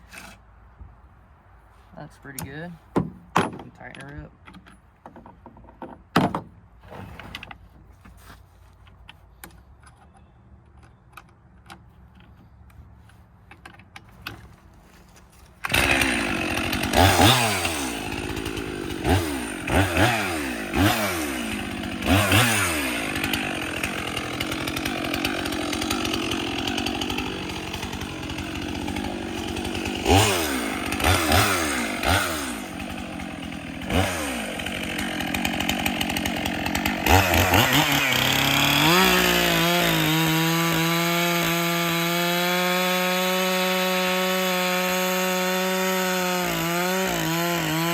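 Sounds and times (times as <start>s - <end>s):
chainsaw revving: 15.6s - 47.9s.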